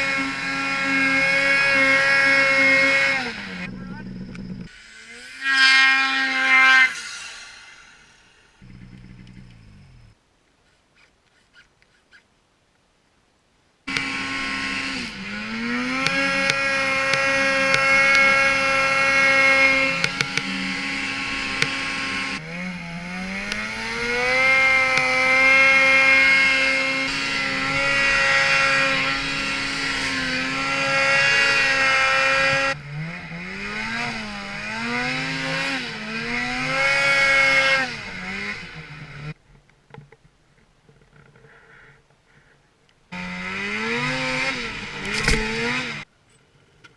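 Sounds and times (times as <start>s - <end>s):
snowmobile engines revving: 0.0s - 10.2s, 13.9s - 39.4s, 43.1s - 46.1s.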